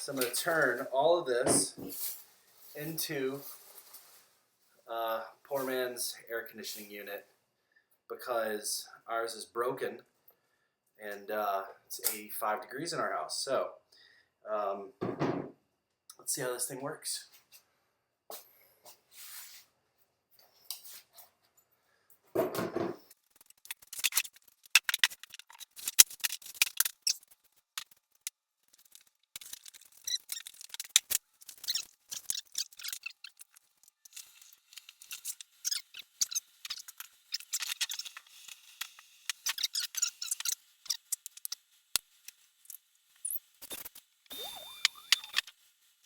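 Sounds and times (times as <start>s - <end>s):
crackling handling noises: 0.1s - 4.8s, 23.0s - 46.0s.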